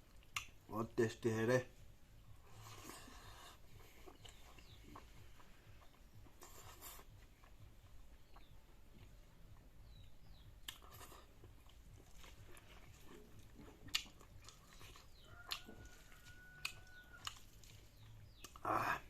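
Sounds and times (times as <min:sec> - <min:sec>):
person chewing: 0:00.0 - 0:00.6, 0:02.3 - 0:18.8
mouth clicks and smacks: 0:00.0 - 0:00.7, 0:03.8 - 0:15.8, 0:16.6 - 0:18.7.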